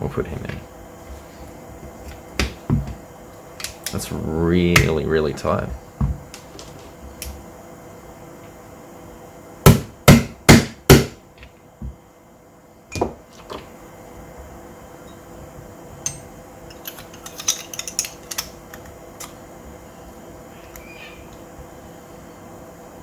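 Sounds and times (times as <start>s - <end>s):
clicks and rattles of metal parts: 16.0s - 19.4s.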